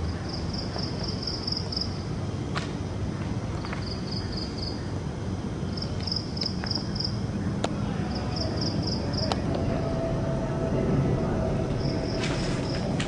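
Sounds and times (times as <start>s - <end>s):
insect chirping: 0.0s - 2.5s, 3.4s - 13.0s
steady low rumble: 0.0s - 13.0s.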